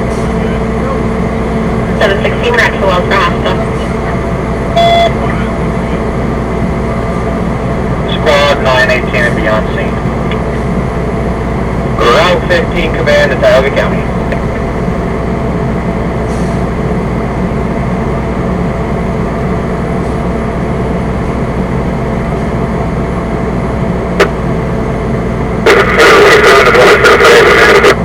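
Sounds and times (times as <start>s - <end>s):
fire engine running: 0.0s - 28.0s
radio static burst: 25.6s - 28.0s.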